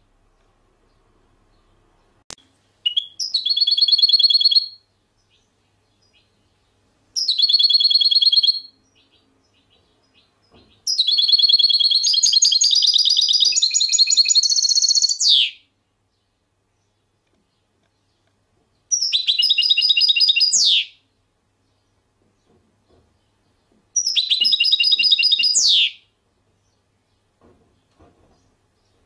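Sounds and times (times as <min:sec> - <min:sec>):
songbird trilling: 0:02.8 - 0:06.3, 0:07.2 - 0:10.3, 0:10.9 - 0:15.6, 0:18.9 - 0:21.0, 0:24.0 - 0:26.0.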